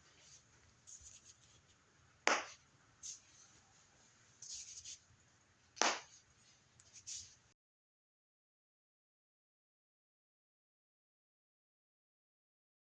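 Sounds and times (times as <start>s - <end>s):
soft rustling: 0.0s - 1.8s, 2.4s - 5.2s, 5.9s - 7.5s.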